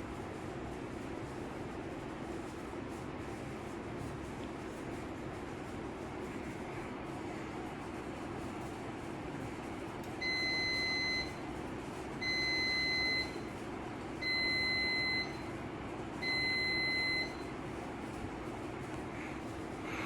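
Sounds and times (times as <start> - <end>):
steady low hum: 0.0 - 20.0
washing machine alert beeps: 10.2 - 11.4, 12.2 - 13.5, 14.2 - 15.5, 16.2 - 17.5.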